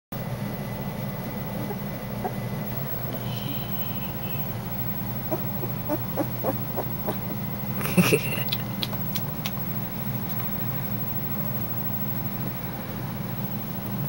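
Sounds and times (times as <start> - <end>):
steady low hum: 0.2 - 14.0
puppy squeaking: 1.6 - 4.5, 5.2 - 7.5
puppy squealing: 1.6 - 4.5, 5.1 - 7.6
quick clicks of eating: 8.2 - 10.5.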